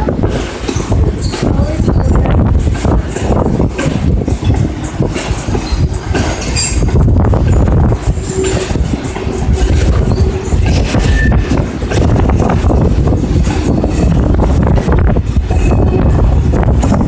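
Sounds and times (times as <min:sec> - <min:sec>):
freight train rumbling past: 0:00.0 - 0:17.0
wheels clattering over rail joints: 0:00.0 - 0:17.0
high wheel squeals: 0:07.5 - 0:11.5.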